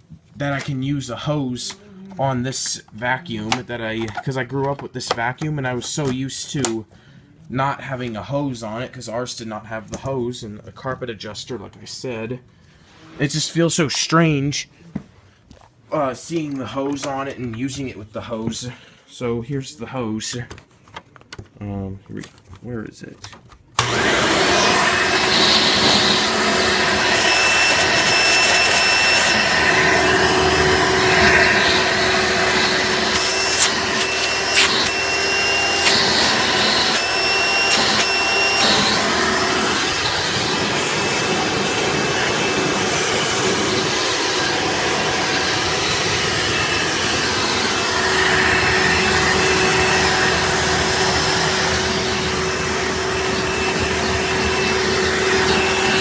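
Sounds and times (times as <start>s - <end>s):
upright vacuum cleaner running: 23.8s - 56.0s.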